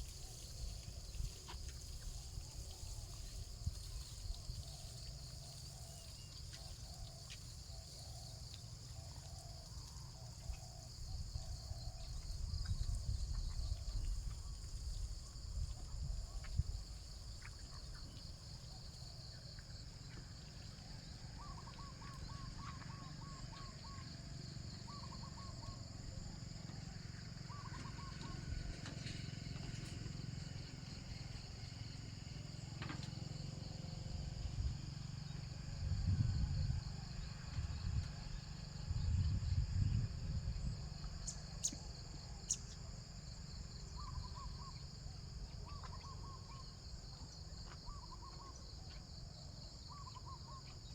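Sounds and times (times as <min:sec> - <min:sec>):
insects droning: 0:00.0 - 0:50.9.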